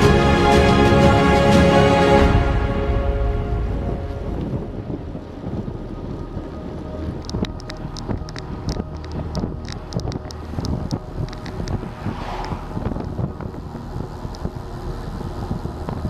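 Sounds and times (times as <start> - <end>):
low rumble: 0.0 - 16.0
wind buffeting microphone: 3.0 - 16.0
light clicks and ticks: 6.4 - 16.0.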